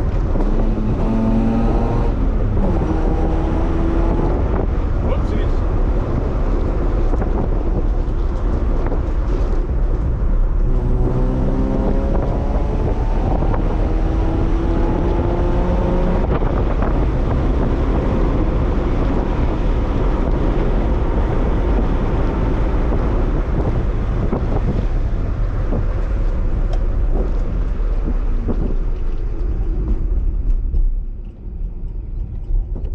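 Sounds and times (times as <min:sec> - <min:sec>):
road rumble: 0:00.0 - 0:32.9
truck engine driving: 0:00.0 - 0:32.9
wind on microphone: 0:00.0 - 0:32.9.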